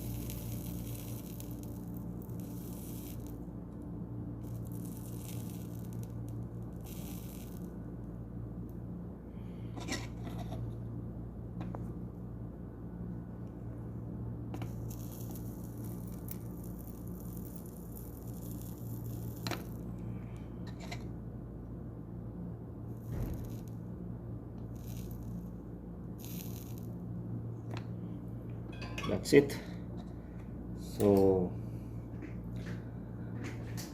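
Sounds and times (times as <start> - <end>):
soldering hiss: 0.0 - 3.5, 4.4 - 8.1, 14.6 - 20.5, 22.9 - 23.9, 24.6 - 27.0
steady low hum: 0.0 - 33.9.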